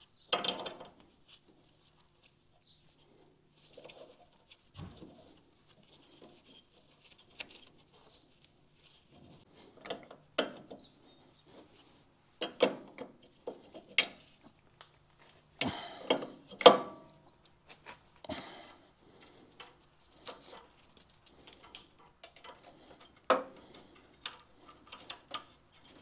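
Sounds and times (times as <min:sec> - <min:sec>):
tools being handled: 0:19.2 - 0:26.0.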